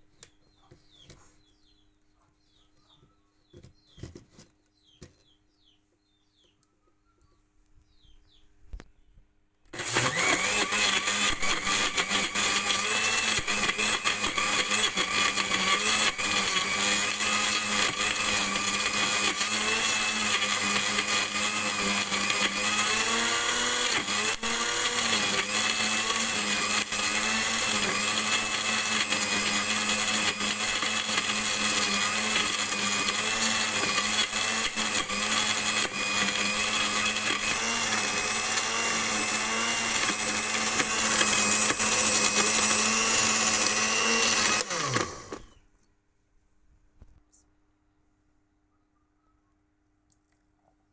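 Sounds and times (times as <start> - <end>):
electric blender running: 9.8 - 45.6.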